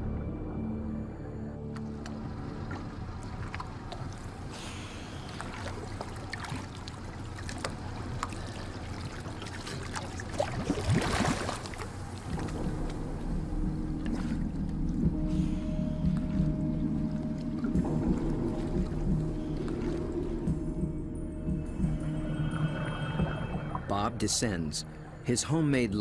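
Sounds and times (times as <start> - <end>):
water splashing against boat hull: 5.1 - 15.1.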